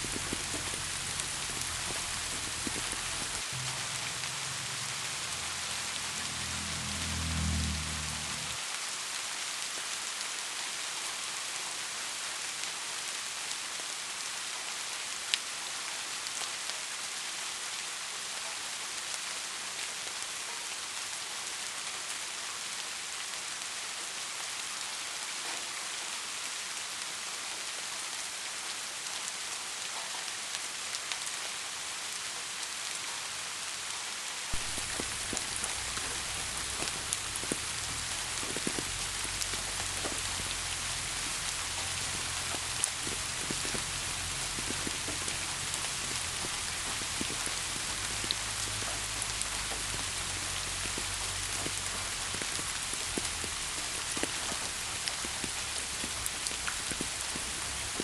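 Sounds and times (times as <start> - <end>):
raindrop taps: 0.0 - 4.3, 34.6 - 58.0
low rumble: 0.0 - 8.6
steady rain falling: 0.0 - 58.0.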